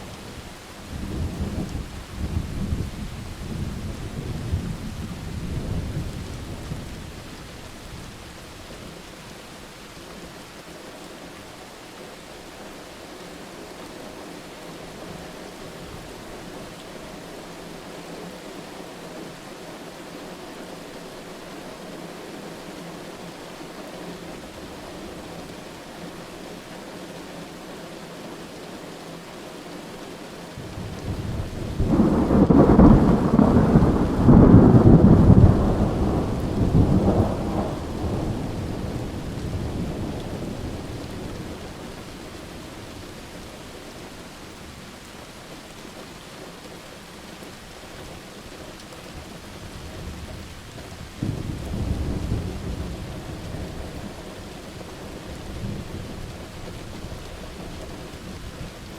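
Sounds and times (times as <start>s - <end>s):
steady rain: 0.0s - 58.9s
thunder cracks and rumbles: 30.6s - 41.4s, 51.2s - 54.1s.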